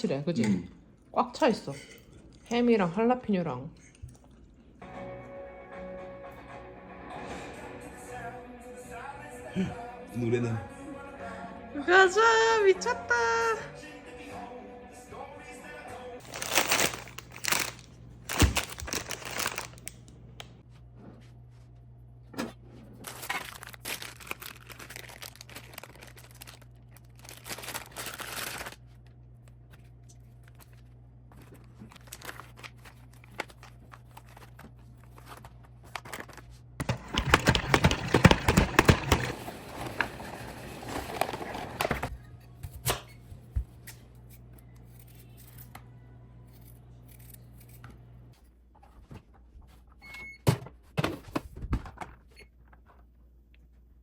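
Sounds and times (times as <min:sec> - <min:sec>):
crinkling and tearing: 0:16.2 - 0:20.1, 0:23.0 - 0:29.1, 0:30.1 - 0:42.0.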